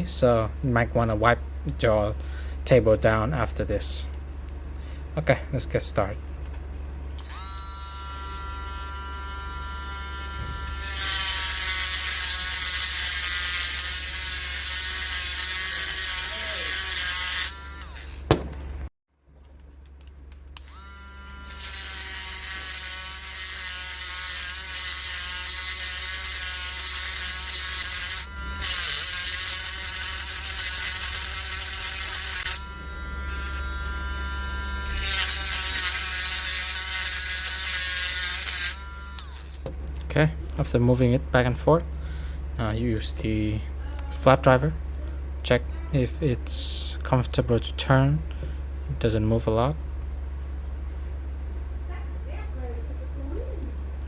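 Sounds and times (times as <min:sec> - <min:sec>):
rotary tool motor whine: 0:07.2 - 0:18.2, 0:20.6 - 0:39.6
cutting disc grinding metal: 0:07.2 - 0:18.3, 0:20.6 - 0:39.6.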